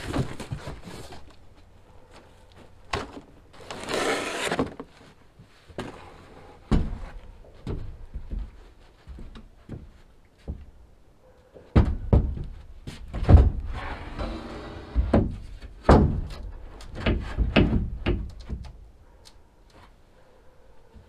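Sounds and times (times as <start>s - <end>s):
hollow thumps and knocks: 6.7s - 10.8s, 11.7s - 13.7s, 15.0s - 18.8s.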